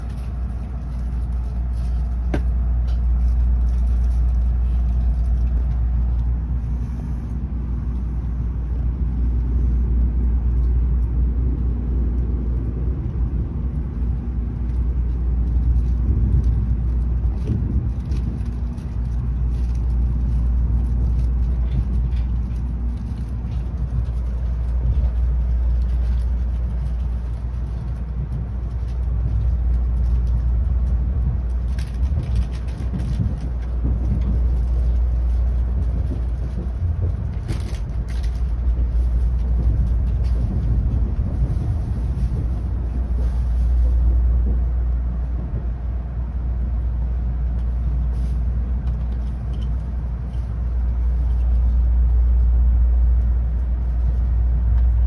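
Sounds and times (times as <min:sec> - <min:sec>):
train interior rumble: 0:00.0 - 0:55.0.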